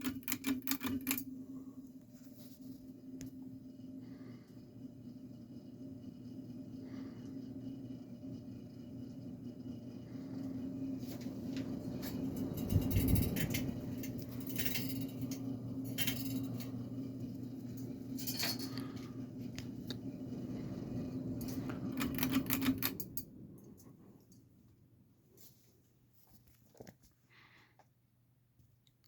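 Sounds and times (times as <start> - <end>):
ceiling fan motor hum: 0.0 - 28.6
light clinking and rattling: 11.6 - 19.1.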